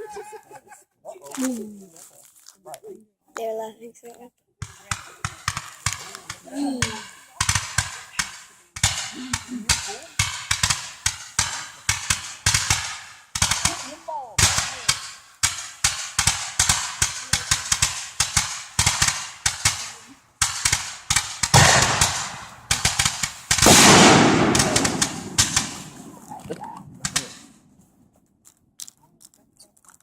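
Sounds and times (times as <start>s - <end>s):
booms with crackling tails: 4.6s - 27.6s
fireworks bursting: 4.6s - 27.7s.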